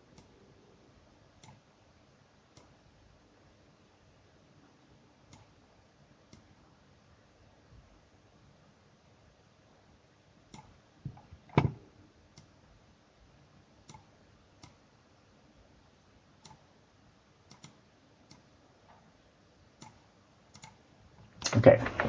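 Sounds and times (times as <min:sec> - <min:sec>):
computer mouse clicks: 0:00.1 - 0:00.4, 0:01.4 - 0:01.7, 0:02.5 - 0:02.8, 0:05.3 - 0:05.6, 0:06.3 - 0:06.6, 0:10.5 - 0:12.6, 0:13.8 - 0:14.8, 0:16.4 - 0:16.7, 0:17.4 - 0:19.1, 0:19.8 - 0:20.8.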